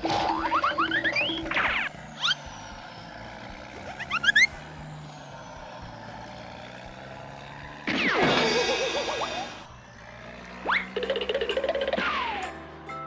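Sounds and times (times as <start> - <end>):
falling wobbling glide: 0.0 - 5.0, 7.8 - 9.8, 10.5 - 12.9
rising whistle-like glide: 0.0 - 6.7, 7.9 - 13.0.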